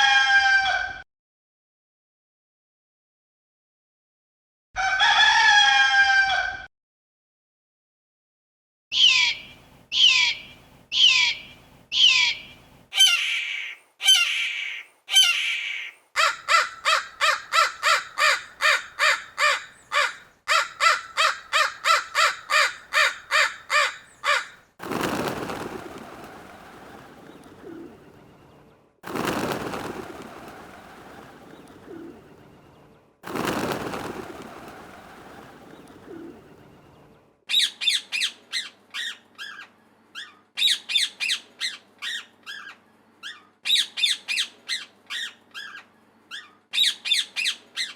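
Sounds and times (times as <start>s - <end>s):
fast pitched bird calls: 8.9s - 25.8s
falling bird calls: 8.9s - 28.1s
harsh raspy bird calls: 9.0s - 24.7s.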